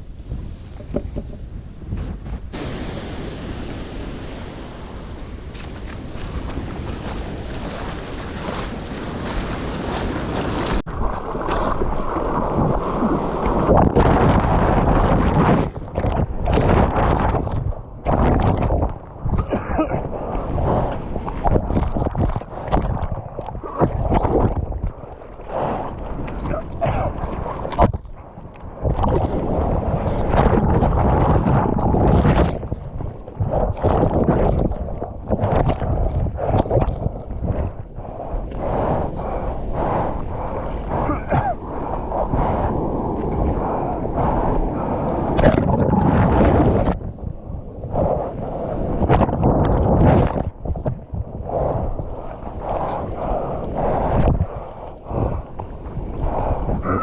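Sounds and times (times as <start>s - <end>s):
ocean surf breaking: 0.0s - 15.6s
sea water splashing: 0.0s - 57.0s
wind buffeting microphone: 0.0s - 57.0s.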